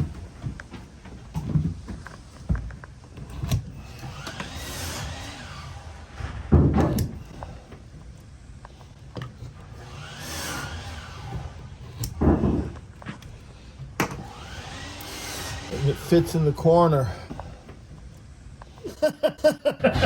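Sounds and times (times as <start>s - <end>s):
rasping stretch of flashing: 3.8s - 7.7s, 8.8s - 13.6s, 14.2s - 18.3s.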